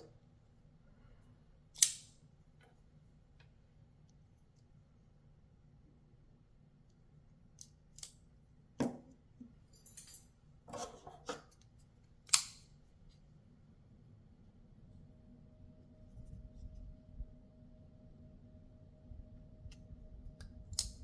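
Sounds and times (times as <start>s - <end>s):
folding knife clicks and knocks: 12.2s - 12.7s, 20.7s - 21.0s.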